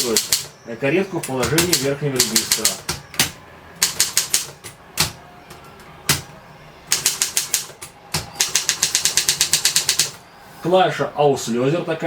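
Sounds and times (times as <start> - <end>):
typewriter keys clacking: 0.0 - 0.5, 1.4 - 5.1, 6.9 - 10.2.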